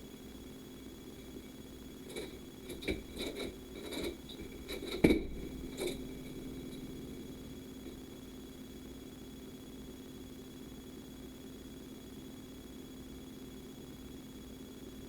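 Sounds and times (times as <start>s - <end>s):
steady electrical hum: 0.0s - 10.4s.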